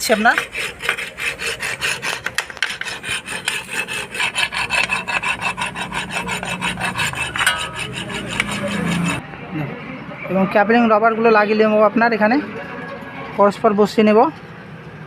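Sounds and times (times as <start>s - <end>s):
abrasive scraping brake shoes: 0.0s - 9.2s.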